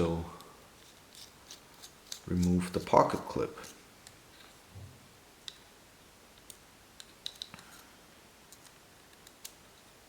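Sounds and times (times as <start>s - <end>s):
faint clicks of handled tool parts: 0.4s - 4.6s, 6.4s - 7.9s, 8.5s - 9.6s.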